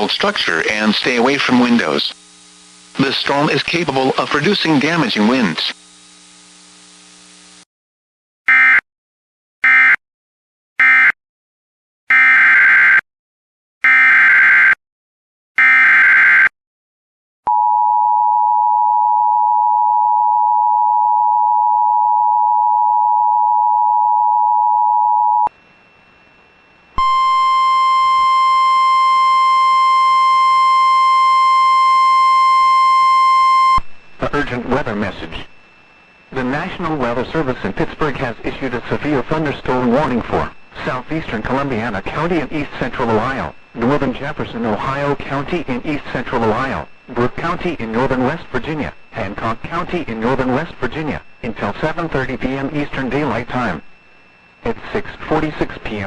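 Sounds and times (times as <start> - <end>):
data bursts: 0.0 - 5.8
two-tone attention signal: 27.0 - 33.8.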